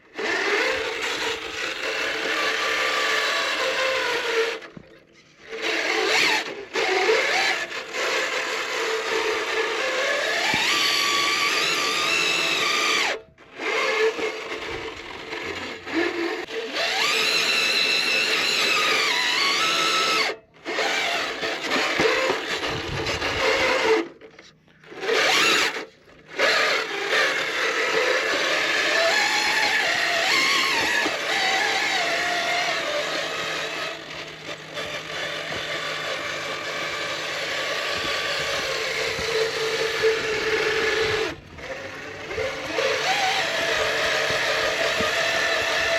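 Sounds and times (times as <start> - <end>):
electric motor and gearbox whining: 0.0 - 45.9.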